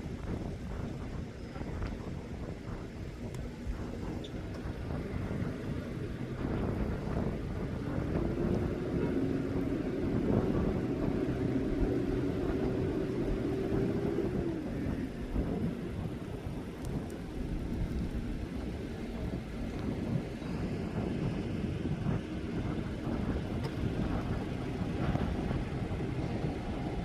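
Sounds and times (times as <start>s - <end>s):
droning motor hum: 0.0s - 27.0s
low rumble: 0.0s - 27.0s.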